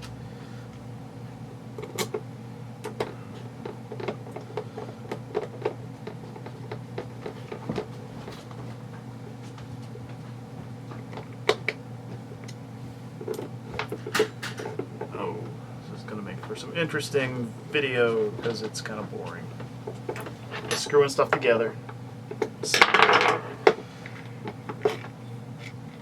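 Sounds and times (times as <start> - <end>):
steady low hum: 0.0 - 26.0.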